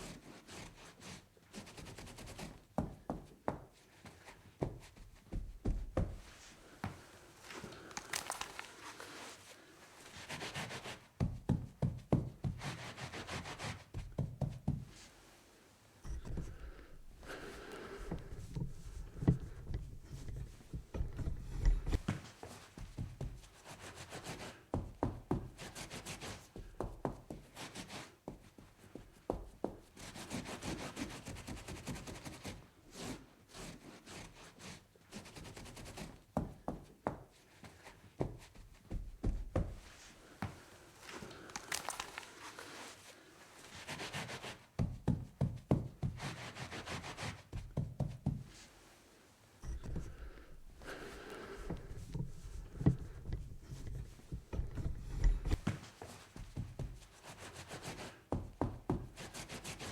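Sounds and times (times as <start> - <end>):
rubbing strokes on tabletop: 8.8 - 11.4, 12.5 - 15.5, 42.4 - 44.7, 46.0 - 47.6, 50.9 - 58.4.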